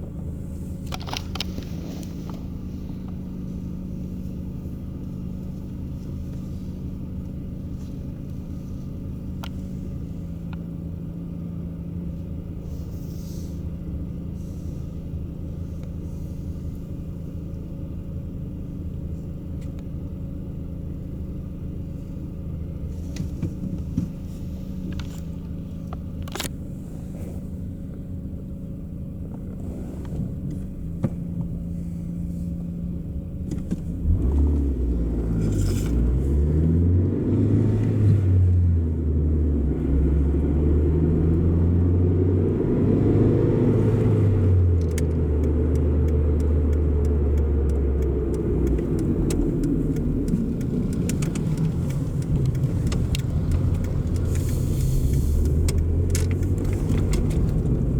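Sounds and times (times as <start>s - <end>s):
car engine exhaust revving: 33.8s - 57.9s.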